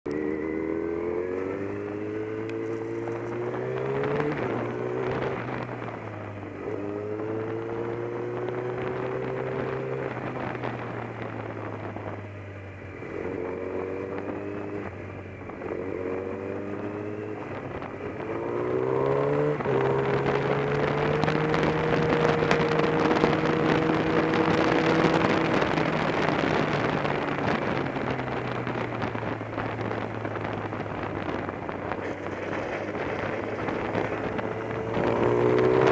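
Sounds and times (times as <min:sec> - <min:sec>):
motorcycle engine accelerating: 0:00.1 - 0:35.9
rushing wind noise: 0:00.1 - 0:35.9.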